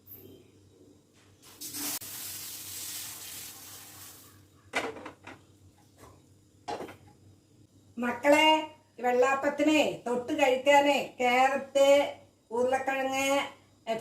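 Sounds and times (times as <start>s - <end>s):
hiss: 1.5s - 4.4s.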